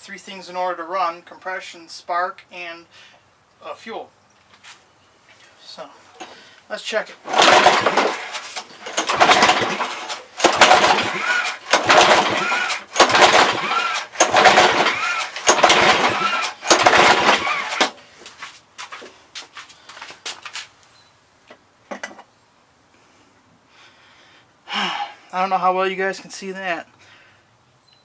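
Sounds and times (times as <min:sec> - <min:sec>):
mower engine cranked by pull cord: 0:07.2 - 0:18.0.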